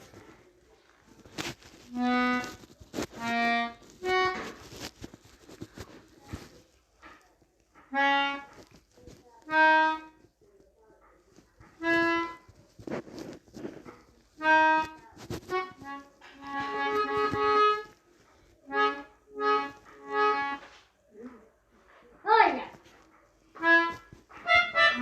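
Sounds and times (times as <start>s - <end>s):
melodica notes: 1.8s - 4.9s, 7.9s - 8.6s, 9.5s - 10.2s, 11.8s - 12.5s, 14.4s - 18.0s, 18.7s - 20.8s, 23.6s - 25.0s.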